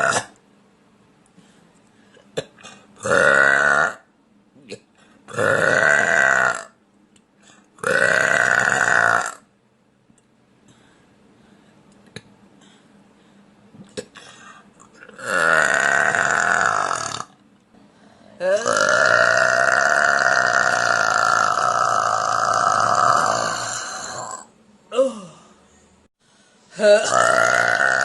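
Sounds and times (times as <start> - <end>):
woman burping: 15.1 - 17.3, 18.4 - 25.3, 26.7 - 28.0.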